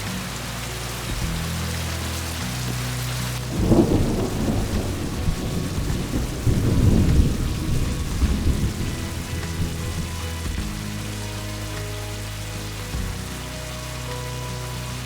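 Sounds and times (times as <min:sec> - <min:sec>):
heavy rain falling: 0:00.0 - 0:15.0
thunder rumbling: 0:00.8 - 0:11.6.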